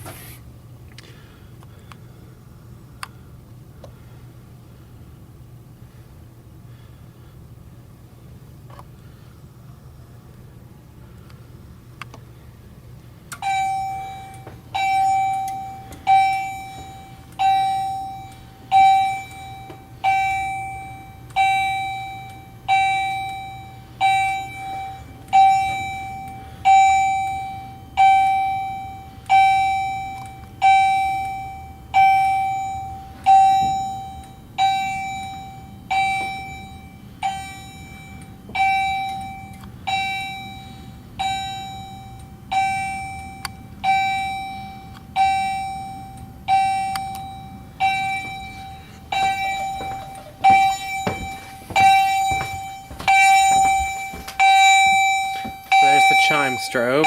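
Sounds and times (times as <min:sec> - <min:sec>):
fire alarm chime ringing: 0:13.3 - 0:57.0.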